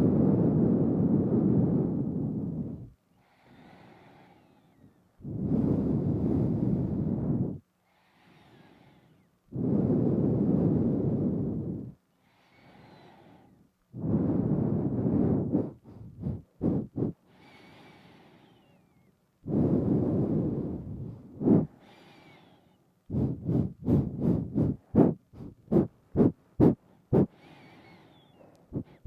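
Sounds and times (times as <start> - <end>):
exhales blowing on microphone: 0.0 - 18.9, 19.5 - 29.0
nose breathing: 0.9 - 29.0
short sniff-like puffs: 12.5 - 18.8, 19.5 - 29.0.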